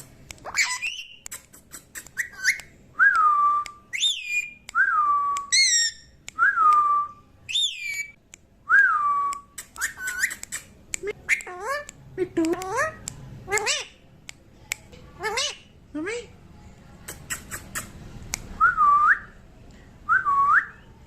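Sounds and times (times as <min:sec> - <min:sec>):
parrot whistling: 0:00.4 - 0:01.2, 0:02.0 - 0:02.7, 0:03.9 - 0:06.1
parrot clicks: 0:09.3 - 0:14.9.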